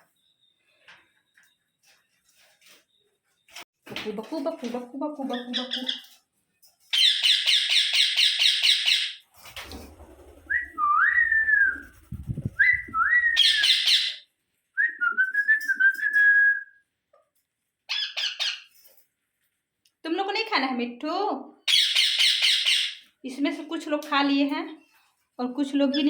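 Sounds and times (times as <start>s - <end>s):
parakeets whistling: 10.5s - 14.2s
parakeets squawking: 12.6s - 14.2s.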